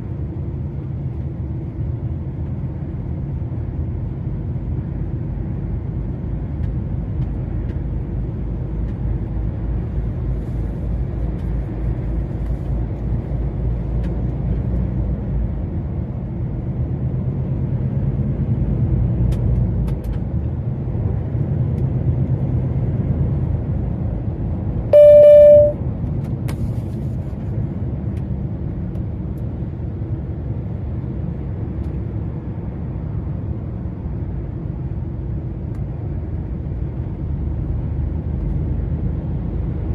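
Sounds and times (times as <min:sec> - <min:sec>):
lorry engine and road rumble: 0:00.0 - 0:39.9
short horn beep: 0:24.9 - 0:25.8.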